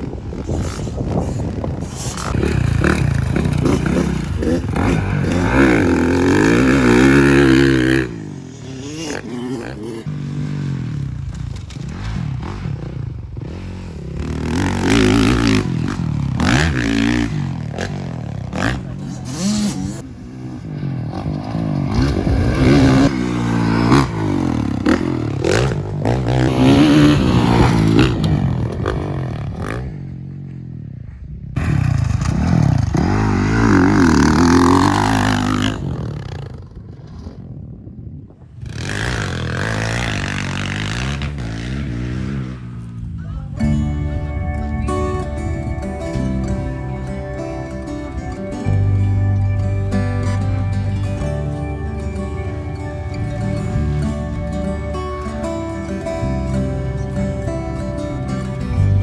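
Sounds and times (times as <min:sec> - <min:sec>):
rough scraping noise: 0:00.0 - 0:30.0, 0:31.6 - 0:37.4
dirt bike engines revving: 0:00.0 - 0:59.0.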